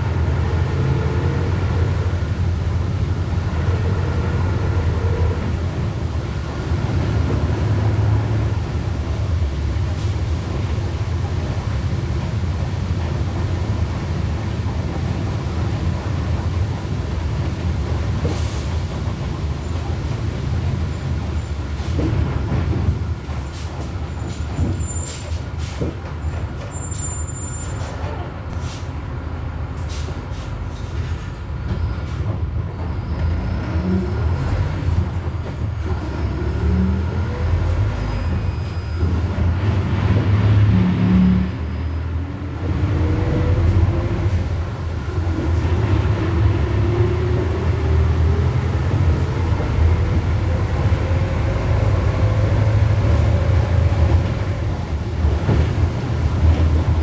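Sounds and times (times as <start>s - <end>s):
bus diesel engine running: 0.0s - 57.0s.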